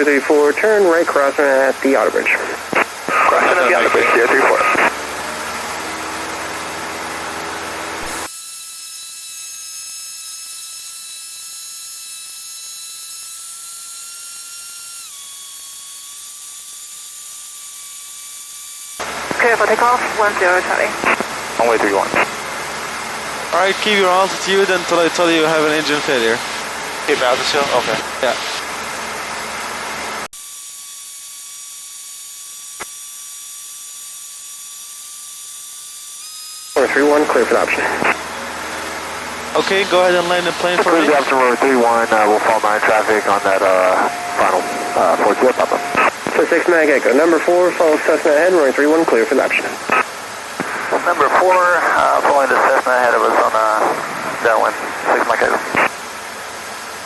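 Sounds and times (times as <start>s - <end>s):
radio hiss with low hum: 0.0s - 5.0s, 19.0s - 22.8s, 23.4s - 28.8s, 36.8s - 38.8s, 39.5s - 56.0s
high-pitched electrical whine: 0.0s - 57.0s.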